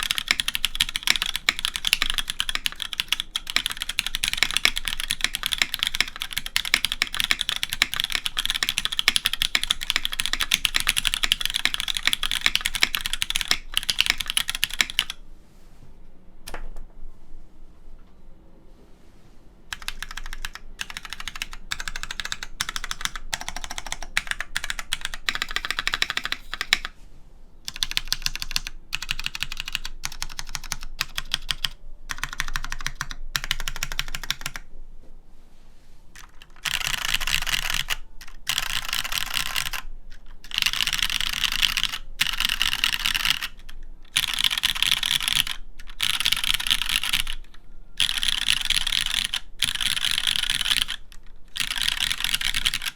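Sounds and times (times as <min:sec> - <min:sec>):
mechanical keyboard typing: 0:00.0 - 0:15.2, 0:19.7 - 0:26.9, 0:27.7 - 0:34.7, 0:36.2 - 0:52.9.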